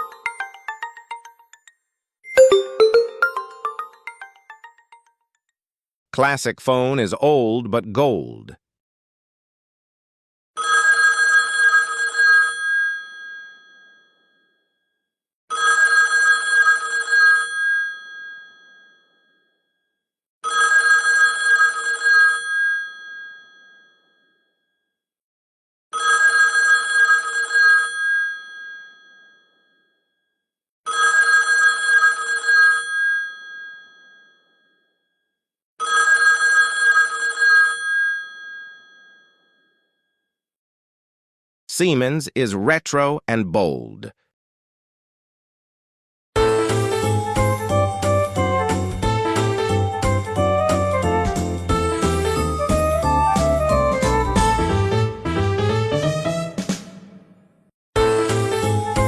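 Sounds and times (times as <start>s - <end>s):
old telephone bell ringing: 10.6s - 14.4s, 15.5s - 19.5s, 20.4s - 24.2s, 26.0s - 29.7s, 30.9s - 34.8s, 35.8s - 39.8s.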